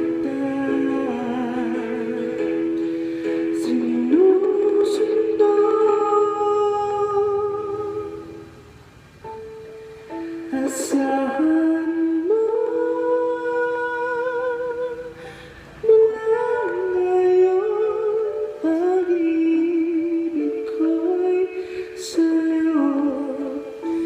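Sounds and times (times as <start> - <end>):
person humming slow melody: 0.0 - 8.6, 9.2 - 24.0
singer breathing: 2.8 - 3.5, 15.1 - 15.8, 21.6 - 22.0.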